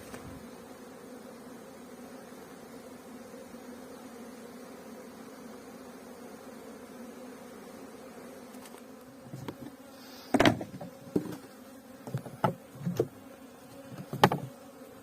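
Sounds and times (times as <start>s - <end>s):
honeybees buzzing: 0.0s - 15.0s
wooden knocks of beehive boxes: 9.2s - 14.8s.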